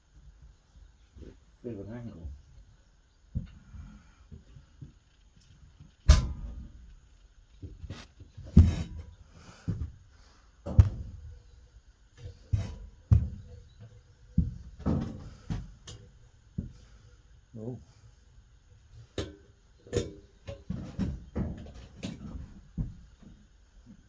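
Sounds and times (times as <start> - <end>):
stove case knocks and clunks: 6.1 - 6.8, 8.4 - 9.9, 10.6 - 11.3, 14.3 - 16.0, 19.2 - 23.4.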